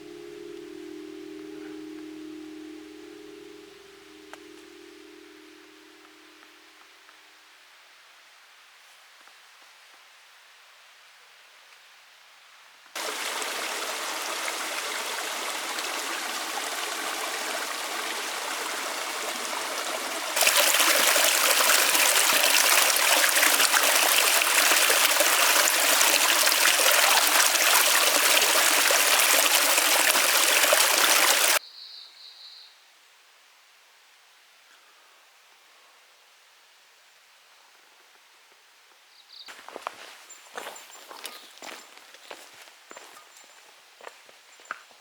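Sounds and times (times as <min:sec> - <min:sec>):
stream water flowing: 0:13.0 - 0:31.6.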